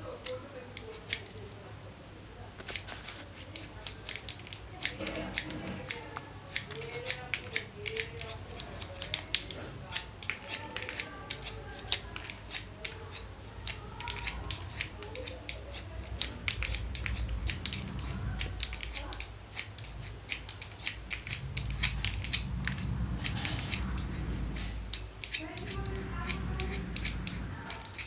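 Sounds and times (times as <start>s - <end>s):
pencil being sharpened: 2.6s - 28.0s
low background rumble: 13.8s - 28.0s.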